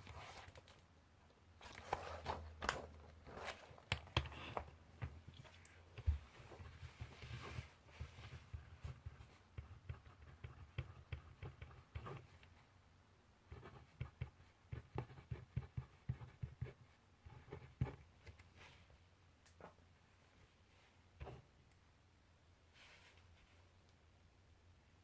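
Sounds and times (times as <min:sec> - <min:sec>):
pencil writing on paper: 0:08.3 - 0:12.5, 0:13.5 - 0:18.1.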